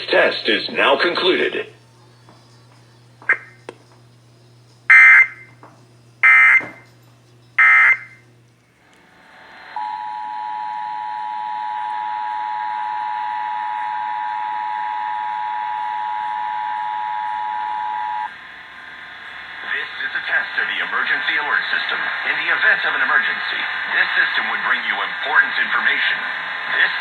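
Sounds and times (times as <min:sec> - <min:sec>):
screeching digital data bursts: 0:07.6 - 0:08.2
two-tone attention signal: 0:07.6 - 0:08.2, 0:09.8 - 0:18.3.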